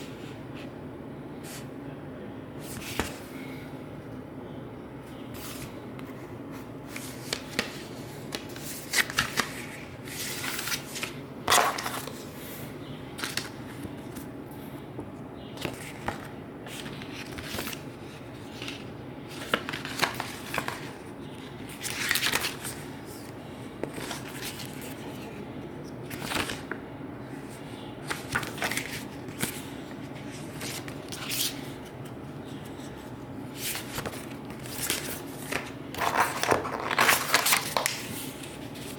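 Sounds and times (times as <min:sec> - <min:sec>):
steady low hum: 0:00.0 - 0:38.9
cardboard packaging rustling: 0:32.5 - 0:38.9.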